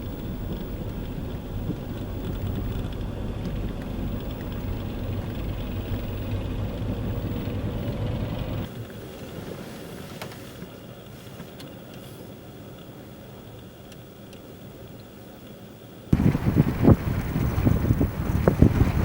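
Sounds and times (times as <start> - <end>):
vehicle rumbling low: 0.0 - 9.4, 16.1 - 19.0.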